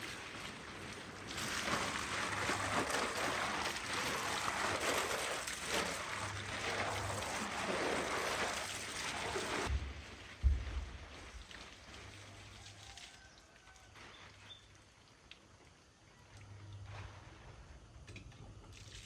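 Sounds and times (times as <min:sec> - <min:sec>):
water rushing: 0:00.0 - 0:13.8
low thump: 0:09.7 - 0:11.0.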